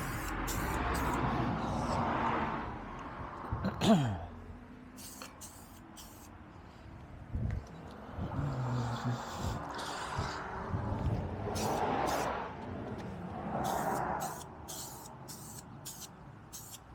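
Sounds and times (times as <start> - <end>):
paint sprayer hissing: 0.0 - 1.4, 5.0 - 6.3, 11.5 - 12.3, 13.6 - 16.9.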